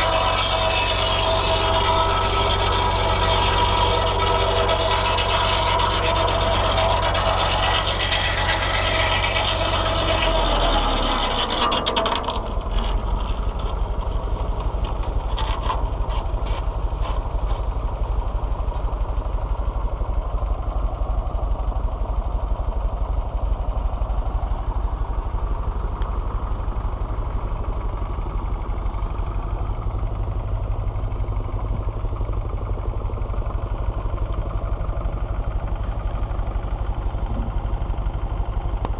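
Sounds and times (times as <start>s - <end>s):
circular saw cutting through log: 0.0s - 19.5s
tractor engine running steadily: 0.0s - 38.9s.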